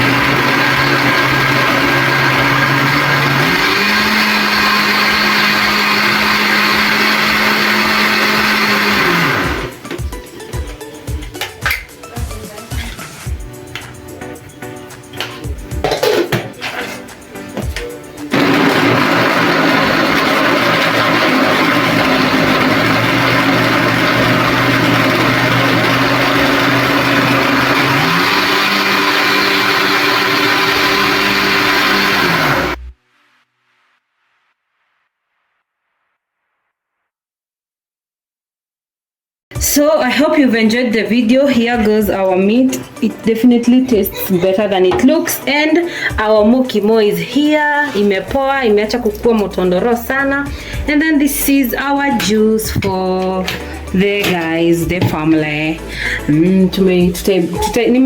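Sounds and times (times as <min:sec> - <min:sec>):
blender running: 0:00.0 - 0:09.8, 0:18.3 - 0:32.9.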